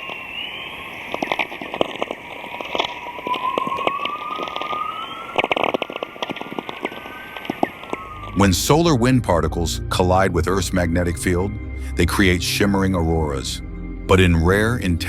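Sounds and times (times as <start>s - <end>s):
crackles and sharp clicks: 0.0s - 8.4s
gliding whistling tones: 0.0s - 14.8s.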